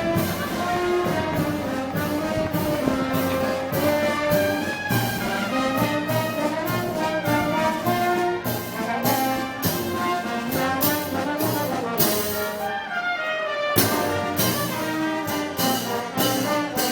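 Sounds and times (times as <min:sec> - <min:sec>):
steady percussion beat: 0:00.0 - 0:12.7, 0:13.8 - 0:16.9
trombones and trumpets melody: 0:00.0 - 0:16.9.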